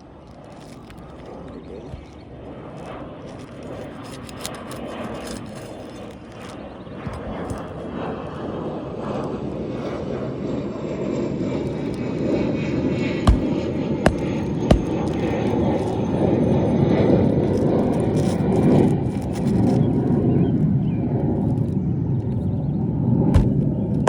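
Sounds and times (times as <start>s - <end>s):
steady low rumble: 11.5s - 24.0s
hammer blows on nail: 13.3s - 15.1s.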